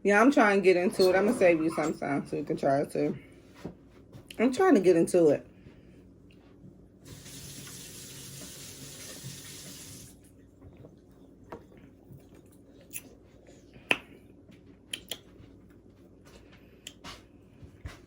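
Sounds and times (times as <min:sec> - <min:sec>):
soda fizzing: 0:07.1 - 0:10.2.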